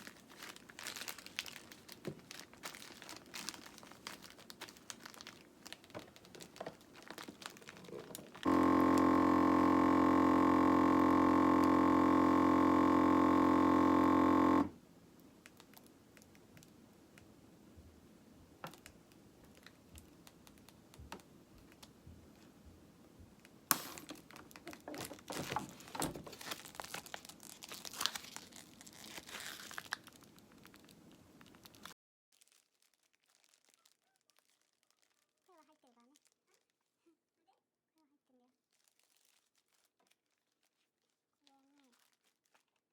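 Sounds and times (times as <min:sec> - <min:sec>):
plastic bags crinkling: 0:00.0 - 0:09.7, 0:23.8 - 0:37.0, 0:38.5 - 0:42.9
vacuum sealer pump humming: 0:07.2 - 0:14.8.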